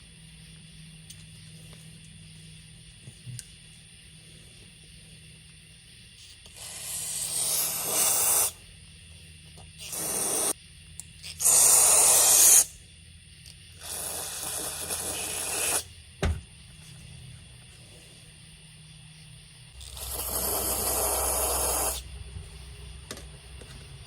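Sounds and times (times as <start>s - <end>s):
aerosol spray hissing: 6.5s - 8.6s, 9.8s - 10.6s, 11.4s - 12.7s, 13.8s - 15.9s, 19.8s - 22.1s.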